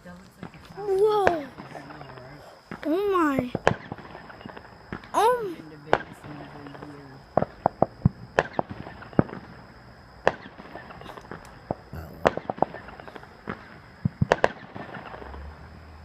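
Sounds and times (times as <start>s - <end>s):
distant fireworks crackle: 0.3s - 16.0s
fireworks cracks and bangs: 7.4s - 9.6s, 10.2s - 15.4s.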